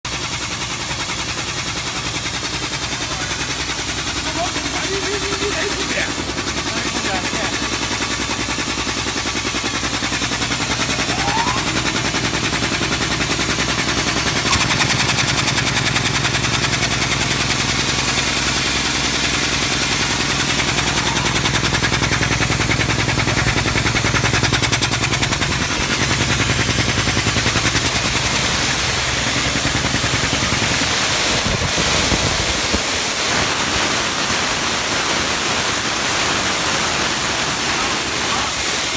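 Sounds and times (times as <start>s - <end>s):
air compressor running: 0.1s - 38.9s
hissing noise: 18.8s - 24.3s.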